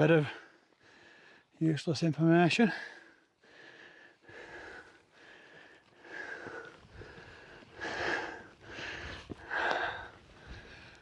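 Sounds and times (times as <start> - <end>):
person breathing hard: 2.8 - 11.0.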